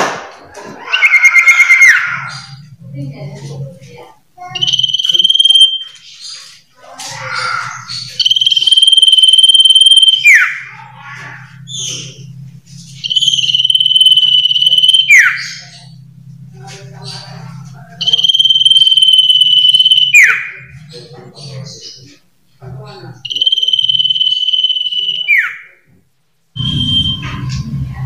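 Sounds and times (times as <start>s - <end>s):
steady low hum: 2.0s - 25.1s, 25.7s - 28.0s
bird chattering notes: 4.4s - 6.6s, 7.2s - 16.1s, 17.0s - 20.8s
bird high whistles: 8.1s - 10.6s, 13.0s - 15.8s.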